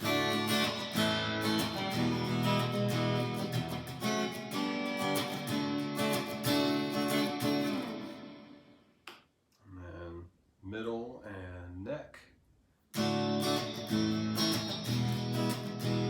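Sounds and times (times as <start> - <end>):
electric guitar strummed chords: 0.0 - 8.7, 13.0 - 16.0.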